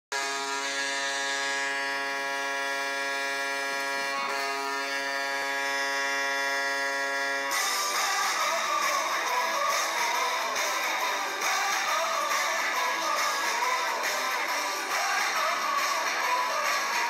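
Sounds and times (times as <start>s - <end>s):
goal horn blast: 0.1s - 8.0s
guitar-driven music: 7.5s - 17.0s.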